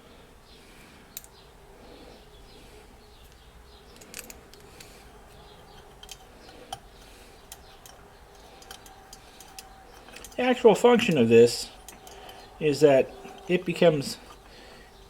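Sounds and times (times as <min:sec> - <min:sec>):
faint steady hum: 0:00.0 - 0:15.0
screws and tools clicking: 0:05.7 - 0:12.5, 0:13.2 - 0:14.5.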